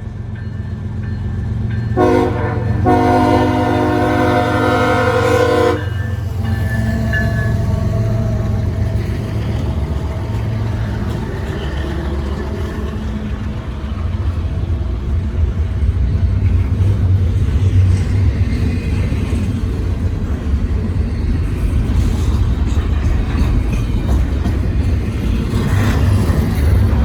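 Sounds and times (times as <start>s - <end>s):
freight train rumbling by: 0.0s - 27.0s
train horn: 2.0s - 9.3s.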